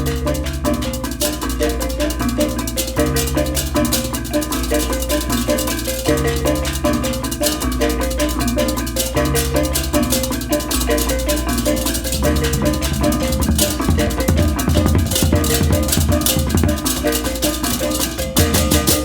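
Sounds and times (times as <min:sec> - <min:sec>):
hand drums: 0:00.0 - 0:19.0
rapid cymbal clashes: 0:00.0 - 0:19.0
gong-chime figures: 0:11.7 - 0:16.3
deep gong strokes: 0:11.8 - 0:16.9.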